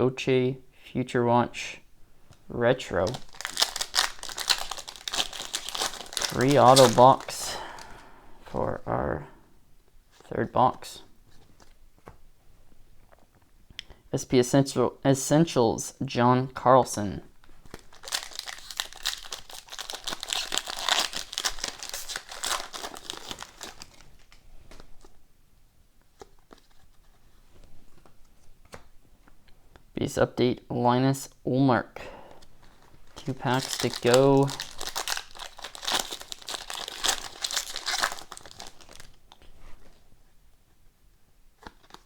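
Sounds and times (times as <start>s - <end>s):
cards rustling: 2.3s - 8.1s, 17.4s - 25.2s, 26.0s - 29.3s, 32.4s - 40.0s, 41.6s - 42.0s
foil wrapper crinkling and tearing: 2.9s - 7.9s, 17.5s - 24.8s, 32.6s - 39.5s, 41.6s - 42.0s.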